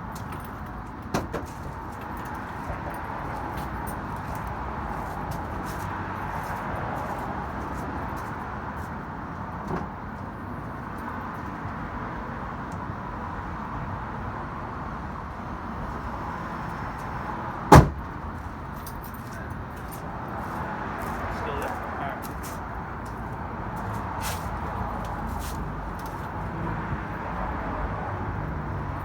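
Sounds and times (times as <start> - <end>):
car door slamming: 1.1 - 1.6, 9.6 - 10.0, 17.7 - 18.2.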